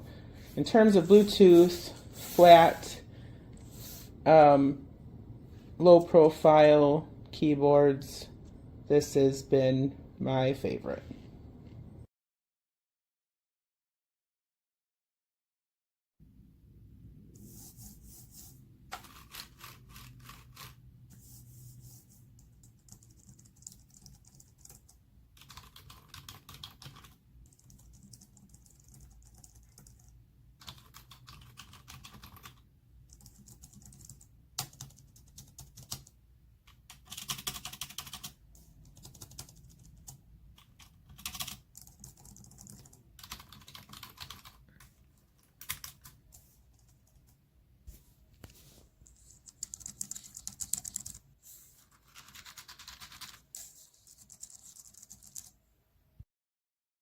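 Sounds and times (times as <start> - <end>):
soft keyboard typing: 18.9 - 47.4, 49.1 - 51.2, 51.8 - 55.6.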